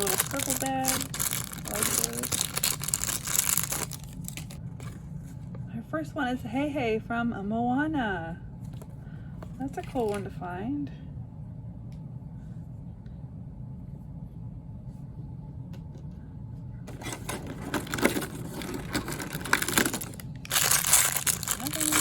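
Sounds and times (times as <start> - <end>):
plastic bag crinkling: 0.0 - 4.6, 16.9 - 22.0
low steady hum: 0.0 - 22.0.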